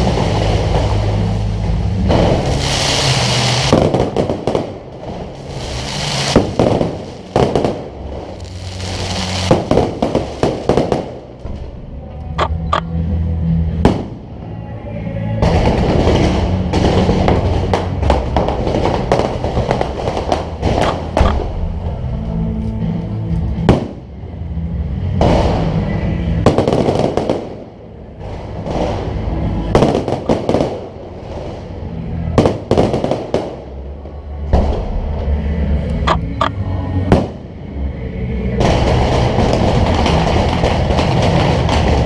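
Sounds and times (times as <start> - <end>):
firework bangs: 0.0 - 11.7, 13.8 - 14.2, 15.4 - 21.7, 23.6 - 24.1, 25.2 - 35.1, 37.1 - 37.4, 38.6 - 42.0
fireworks crackling: 0.0 - 11.8, 15.4 - 21.8, 26.4 - 34.8, 38.5 - 42.0
music playing: 0.0 - 42.0.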